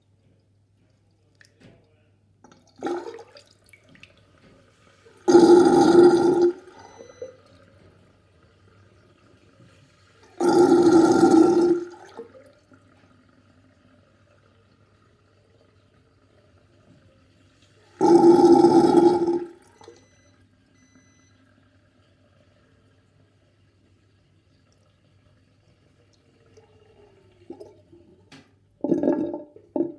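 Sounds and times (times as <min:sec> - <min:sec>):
sink drain gurgling: 0:02.5 - 0:20.1, 0:24.1 - 0:29.9.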